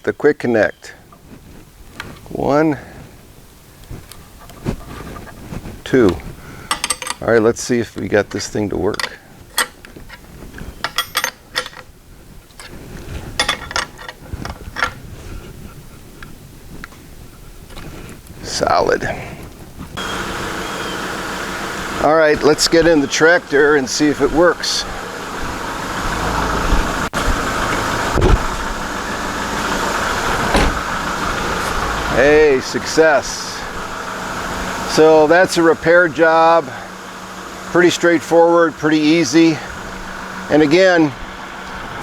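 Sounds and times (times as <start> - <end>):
sharp clicks and metallic clinks: 6.0 - 11.9, 13.4 - 15.0
diesel engine idling: 20.0 - 42.0
short low thump: 28.1 - 28.6, 30.4 - 31.0.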